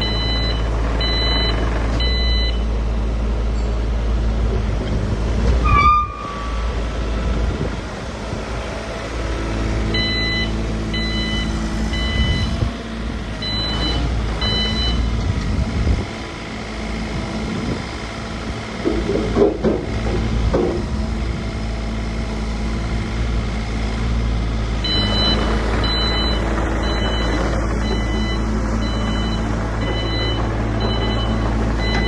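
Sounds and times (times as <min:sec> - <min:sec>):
travel alarm beeping: 0:00.0 - 0:02.7, 0:10.0 - 0:12.6, 0:13.4 - 0:15.1, 0:24.8 - 0:32.0
diesel engine running: 0:00.0 - 0:32.0
short high squeal: 0:05.6 - 0:06.7.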